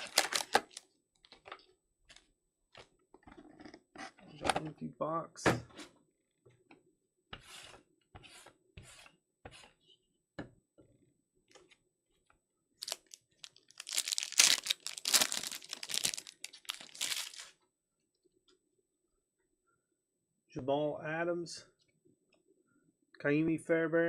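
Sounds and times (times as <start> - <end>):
wrappers tearing and crinkling: 0.0 - 0.8, 12.8 - 17.5
card pack wrappers rustling: 0.0 - 1.4, 12.8 - 17.5.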